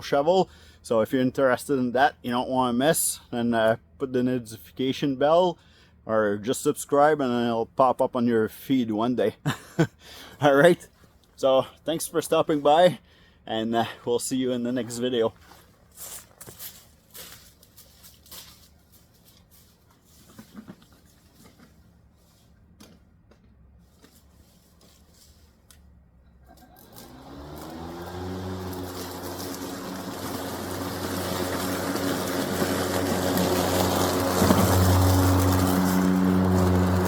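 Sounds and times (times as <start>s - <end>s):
lawn mower motor humming: 26.5s - 37.0s.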